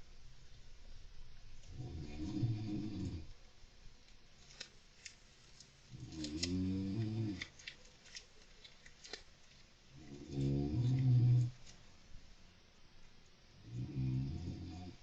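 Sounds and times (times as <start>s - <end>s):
person snoring: 1.8s - 3.3s, 10.2s - 11.6s, 13.7s - 15.0s
hamster clicks and ticks: 6.0s - 9.3s.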